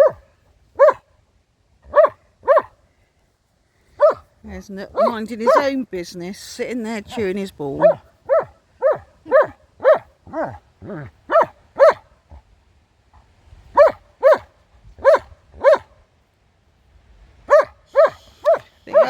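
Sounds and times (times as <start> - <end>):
dog barking: 0.0 - 1.1, 1.9 - 2.8, 4.0 - 4.3, 4.9 - 5.7, 7.8 - 12.1, 13.8 - 15.9, 17.5 - 19.0.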